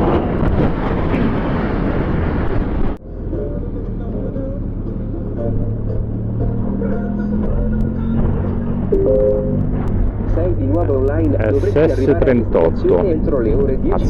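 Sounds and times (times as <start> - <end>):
wind rush on microphone: 0.0 - 3.0.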